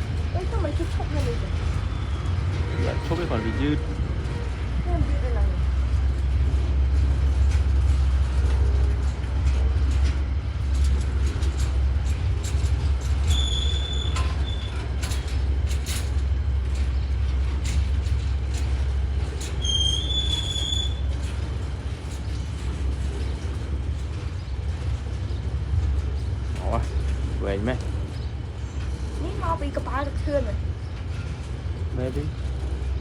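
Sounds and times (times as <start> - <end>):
train rumbling: 0.0 - 33.0
wheels clicking over rails: 0.0 - 33.0
high wheel squeal: 13.2 - 14.8, 19.4 - 21.4.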